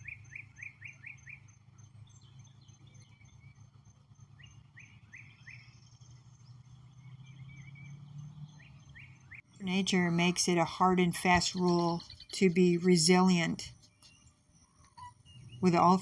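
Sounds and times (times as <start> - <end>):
songbird calling: 7.2 - 16.0
steady low hum: 9.5 - 16.0.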